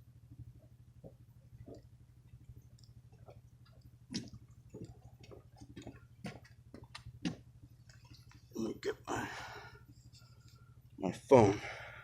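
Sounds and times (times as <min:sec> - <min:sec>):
low steady hum: 0:00.0 - 0:12.0
faint clicks and knocks: 0:00.3 - 0:08.5.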